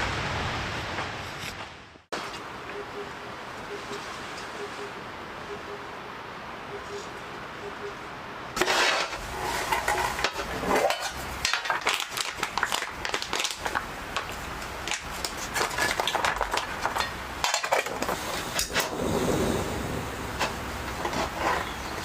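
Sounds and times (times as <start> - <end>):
dishes and utensils clattering: 8.6 - 12.1.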